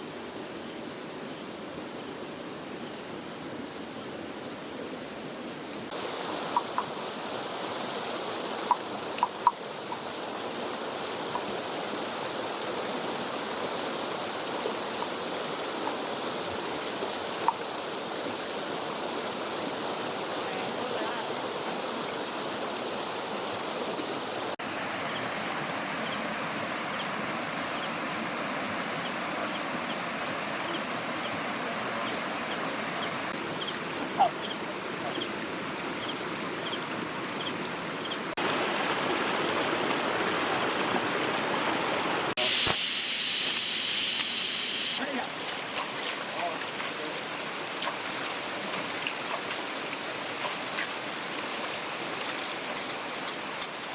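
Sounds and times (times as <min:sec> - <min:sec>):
faint light ticks: 0:52.2 - 0:53.9.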